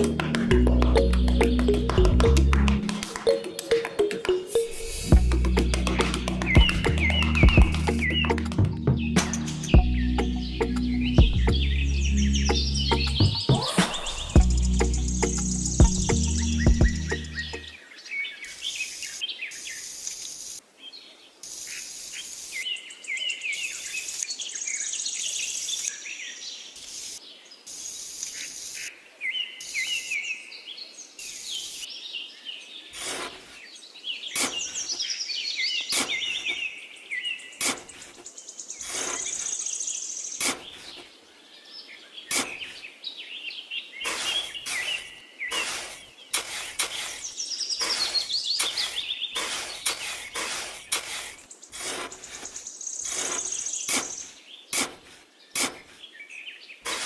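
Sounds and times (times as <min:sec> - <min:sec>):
sharp clicks and taps: 0:00.0 - 0:09.9
birds chirping: 0:00.0 - 0:20.4, 0:33.7 - 0:54.8.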